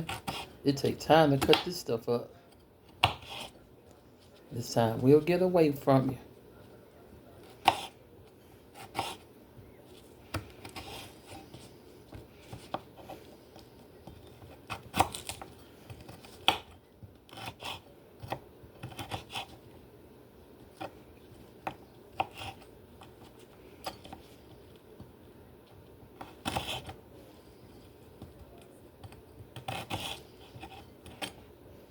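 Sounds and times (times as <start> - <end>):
knife chopping on board: 0.0 - 0.5, 2.9 - 3.5, 7.6 - 8.0, 8.8 - 9.2, 14.0 - 19.6, 26.2 - 27.0, 28.2 - 31.4
knife scraping: 0.0 - 0.6, 3.0 - 3.6, 7.5 - 8.0, 8.7 - 9.2, 10.4 - 11.8, 14.0 - 19.6, 22.1 - 24.4, 26.2 - 27.9, 29.1 - 31.4.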